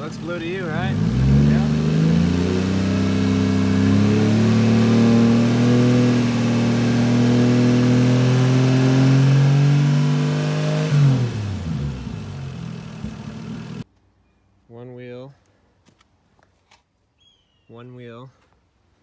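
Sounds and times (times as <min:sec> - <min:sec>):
car engine revving: 0:00.0 - 0:13.8.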